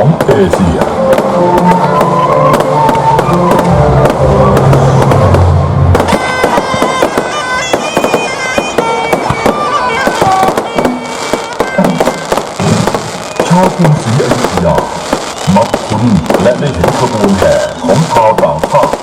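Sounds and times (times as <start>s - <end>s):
reedy wind melody over drones: 0.0s - 15.9s
fireworks crackling: 0.0s - 19.0s
higher brighter melody: 0.4s - 15.5s.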